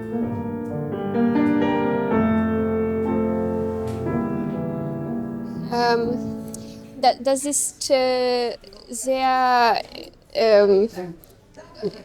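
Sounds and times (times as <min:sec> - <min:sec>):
keyboard playing slow chords: 0:00.0 - 0:07.0.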